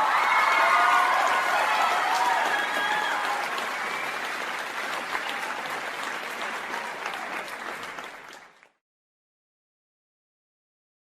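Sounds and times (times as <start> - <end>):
crowd applause: 0.0 - 8.8.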